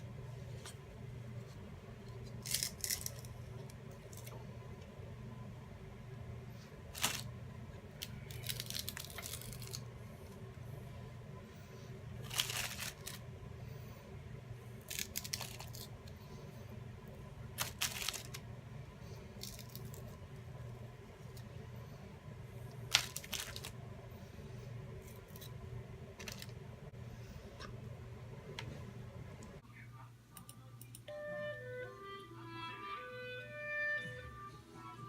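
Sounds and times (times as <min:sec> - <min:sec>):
wet paper tearing and crunching: 0:07.0 - 0:07.3, 0:08.1 - 0:09.9, 0:12.2 - 0:13.2, 0:14.8 - 0:15.9, 0:17.6 - 0:18.4, 0:22.9 - 0:23.8.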